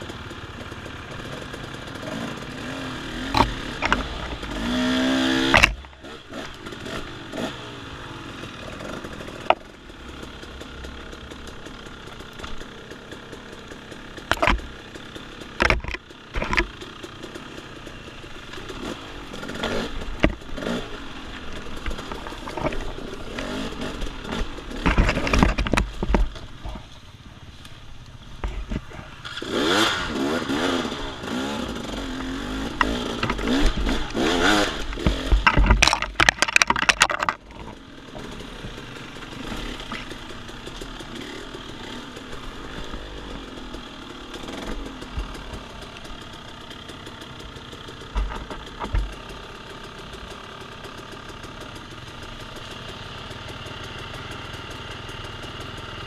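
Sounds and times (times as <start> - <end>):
dirt bike engine revving: 0.0 - 27.0, 28.4 - 56.0
knocks and clatter: 14.2 - 14.7, 15.6 - 16.9, 18.5 - 20.8, 21.4 - 26.9, 31.8 - 42.0, 48.1 - 49.4.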